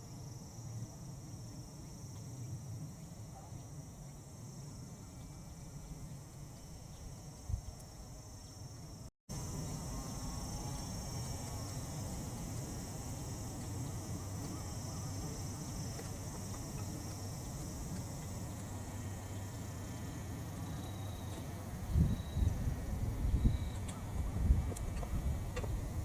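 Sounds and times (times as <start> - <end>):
crickets chirping: 0.0 - 26.0
wind rumble on microphone: 5.2 - 7.9, 21.5 - 26.0.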